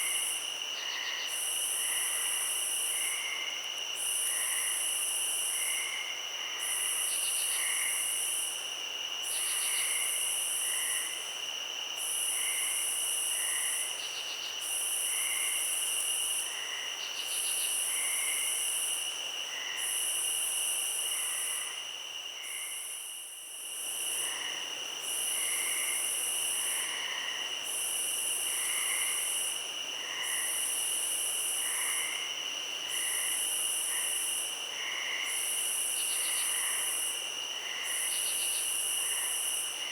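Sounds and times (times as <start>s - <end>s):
high-pitched insect trill: 12.0s - 39.9s.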